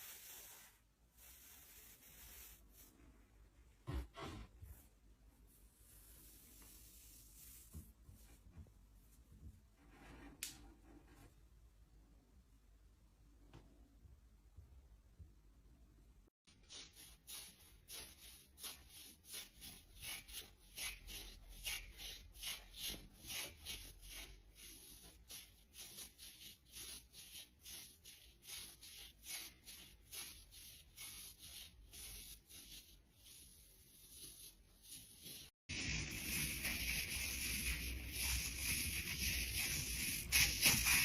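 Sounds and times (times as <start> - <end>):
nylon hosiery rubbing: 16.5 - 41.0.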